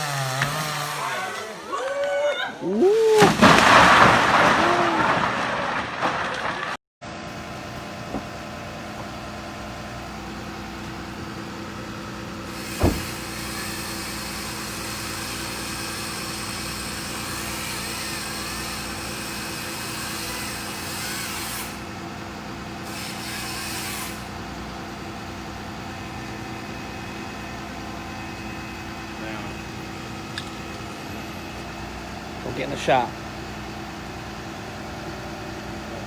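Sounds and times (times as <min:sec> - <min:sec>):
engine running: 0:07.0 - 0:20.8, 0:24.0 - 0:36.0
sharp thud: 0:08.1 - 0:08.3, 0:12.8 - 0:13.2.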